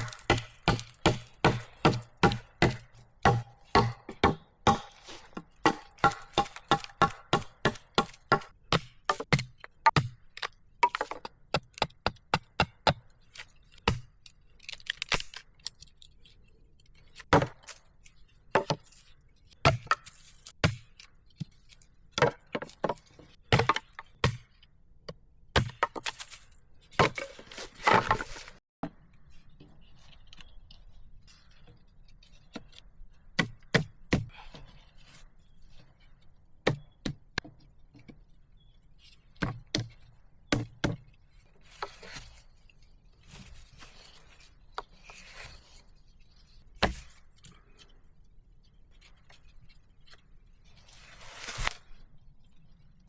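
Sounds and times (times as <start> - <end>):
chopping strikes into wood: 0.0 - 13.0, 17.3 - 17.7, 20.6 - 20.9, 22.2 - 24.5, 25.6 - 26.2, 33.4 - 34.3, 36.6 - 37.2, 39.4 - 39.9, 40.5 - 41.0, 46.8 - 47.1
scraping and rustling: 26.1 - 28.6.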